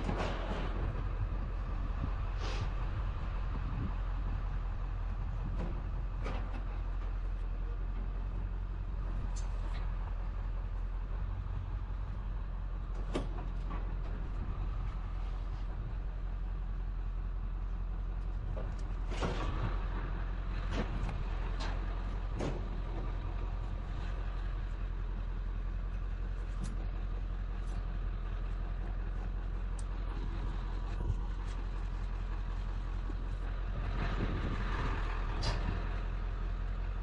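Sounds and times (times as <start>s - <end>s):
vehicle engine rumble: 0.0s - 37.0s.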